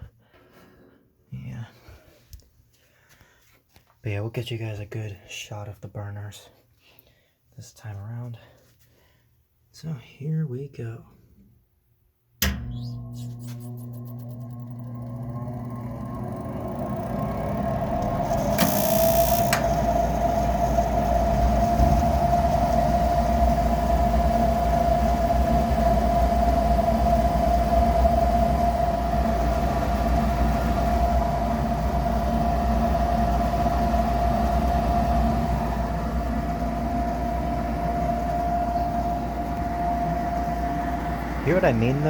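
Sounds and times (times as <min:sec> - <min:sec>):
motor whine spinning up: 0:12.5 - 0:42.0.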